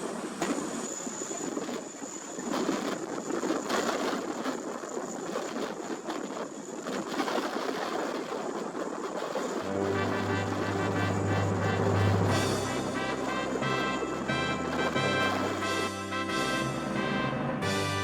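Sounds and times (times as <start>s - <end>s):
strong gusting wind: 8.8s - 18.0s
aircraft noise: 9.6s - 18.0s
thin high whine: 9.6s - 18.0s.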